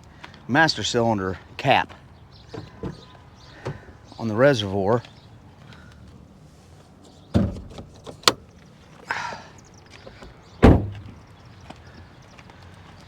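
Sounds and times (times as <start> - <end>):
clunks under car hood: 2.5 - 3.9, 7.0 - 8.6, 10.0 - 11.2.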